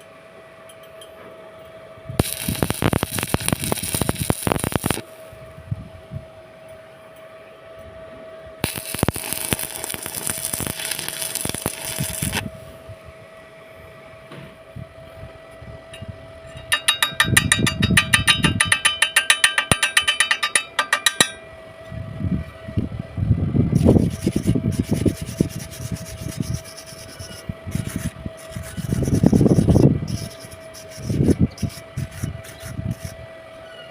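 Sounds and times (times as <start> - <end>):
steady hum: 1.8 - 33.6
scraping and rubbing: 23.8 - 33.2.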